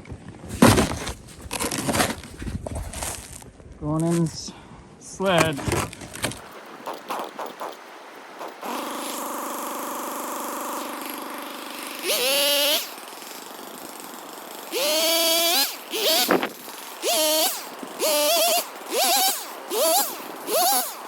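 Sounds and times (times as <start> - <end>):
snowmobile engine revving: 8.4 - 21.0.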